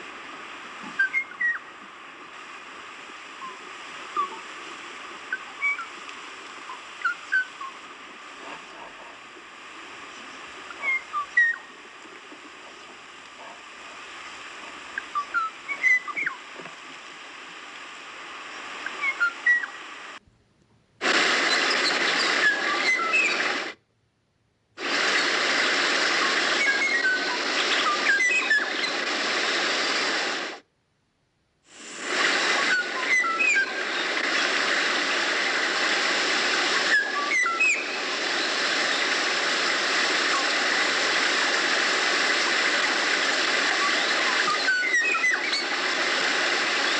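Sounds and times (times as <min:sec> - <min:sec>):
steady hiss: 0:00.0 - 0:23.9, 0:24.7 - 0:30.7, 0:31.6 - 0:46.9
bird whistled notes: 0:00.9 - 0:01.7, 0:03.4 - 0:04.4, 0:05.3 - 0:05.9, 0:06.6 - 0:07.8, 0:10.7 - 0:11.7, 0:15.0 - 0:16.4, 0:19.0 - 0:19.8, 0:21.5 - 0:23.4, 0:26.4 - 0:29.0, 0:32.6 - 0:33.9, 0:36.8 - 0:38.0, 0:43.8 - 0:45.7.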